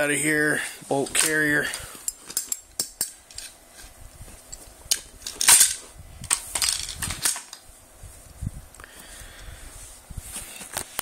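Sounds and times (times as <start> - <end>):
metal clicks and scrapes: 1.0 - 7.6.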